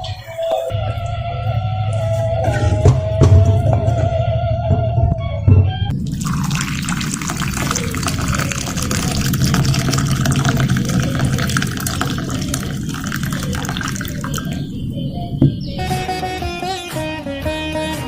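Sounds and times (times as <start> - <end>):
water rushing: 5.9 - 14.6.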